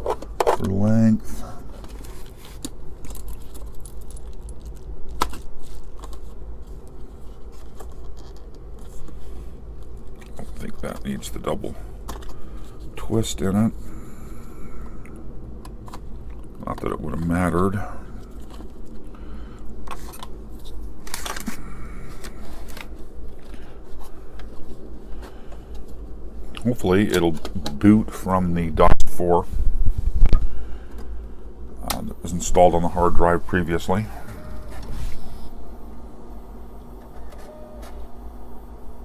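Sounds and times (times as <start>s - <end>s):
low hum: 29.6s - 39.0s.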